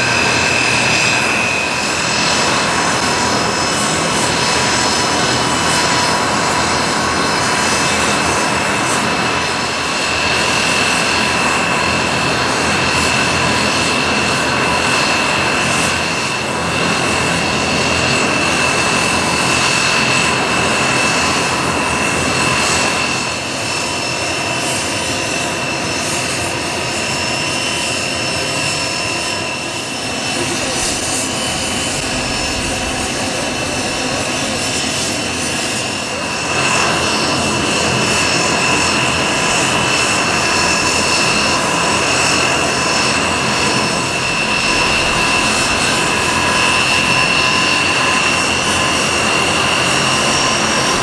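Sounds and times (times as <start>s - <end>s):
aircraft engines whining: 0.0s - 51.0s.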